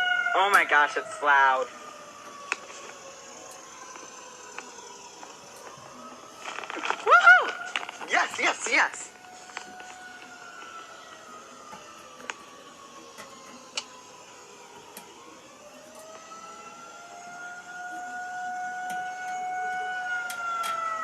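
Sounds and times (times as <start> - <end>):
warning siren winding down: 0.0 - 21.0.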